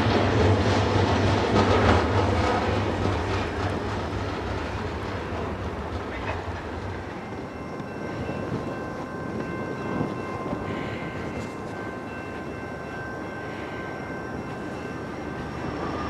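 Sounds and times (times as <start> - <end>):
train wheels clicking over rail joints: 0.0 - 12.5
faint high ringing tone: 7.2 - 16.0.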